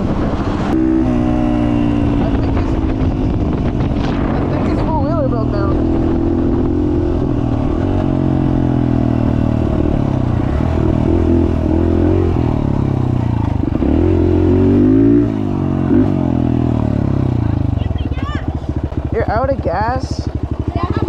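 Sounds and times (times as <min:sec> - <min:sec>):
dirt bike engine revving: 0:00.0 - 0:21.0.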